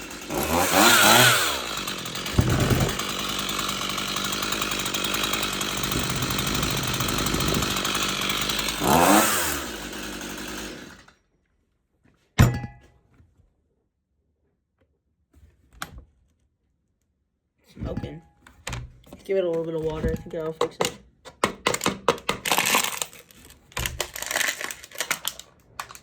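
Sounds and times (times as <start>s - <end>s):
chainsaw idling and revving: 0.0s - 11.2s, 21.8s - 26.0s.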